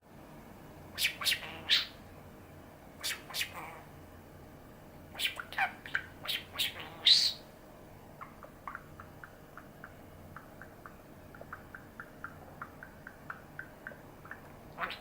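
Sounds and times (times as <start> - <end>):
budgerigar chattering: 1.0 - 2.0, 5.2 - 7.4, 8.2 - 15.0.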